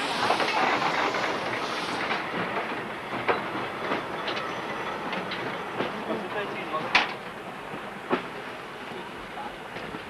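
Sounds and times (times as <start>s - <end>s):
train rolling on rails: 0.0s - 10.0s
wheels clicking over rail joints: 0.1s - 8.5s.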